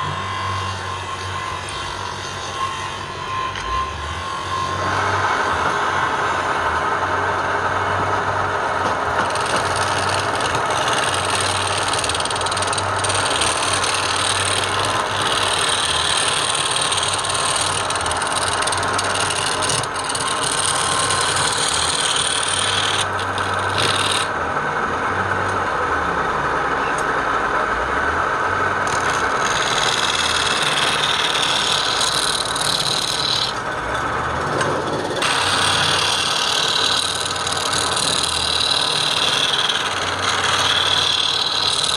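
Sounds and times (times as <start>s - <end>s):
motor hum: 0.0s - 41.9s
tool rasping wood: 8.8s - 24.3s, 28.9s - 41.9s.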